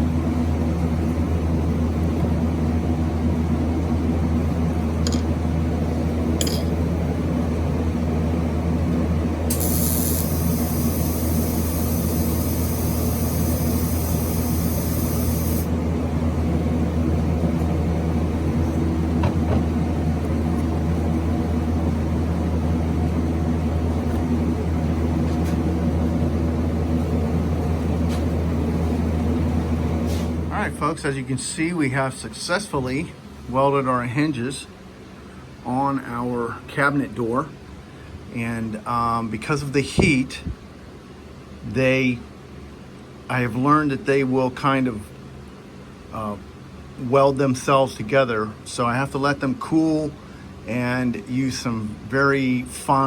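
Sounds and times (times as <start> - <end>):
electrical hum: 0.0 - 40.9
hiss: 9.5 - 15.7.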